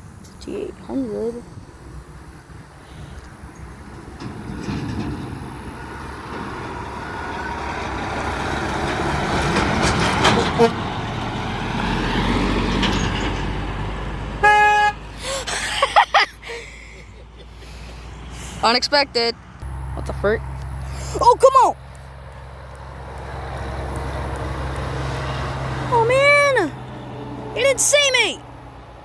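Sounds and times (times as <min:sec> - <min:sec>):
dump truck passing: 0:00.0 - 0:29.0
truck horn toot: 0:10.2 - 0:10.9, 0:14.4 - 0:15.1.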